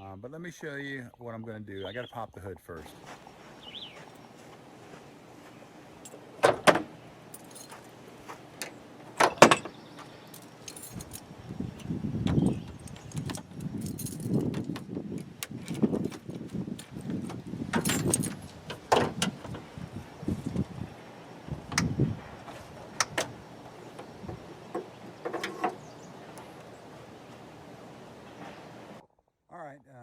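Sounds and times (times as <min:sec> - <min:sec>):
hood latch metallic clacks: 0:06.0 - 0:08.0, 0:08.6 - 0:19.7, 0:21.6 - 0:26.7
knocking rustling and clinking: 0:06.0 - 0:19.7, 0:22.4 - 0:26.7.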